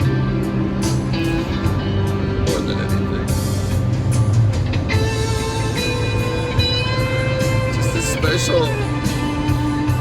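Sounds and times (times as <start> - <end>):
guitar background music: 0.0 - 10.0.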